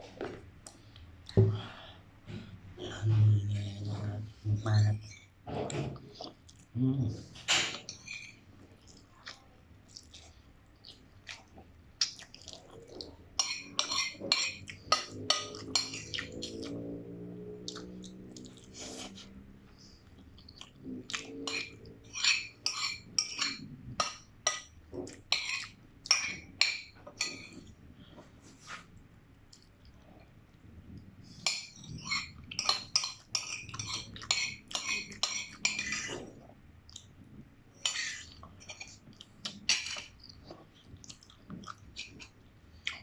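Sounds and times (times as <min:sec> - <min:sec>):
cutlery clinking against a bowl: 0:07.4 - 0:08.4, 0:13.4 - 0:17.0, 0:21.1 - 0:27.7, 0:31.4 - 0:36.4, 0:37.8 - 0:40.2.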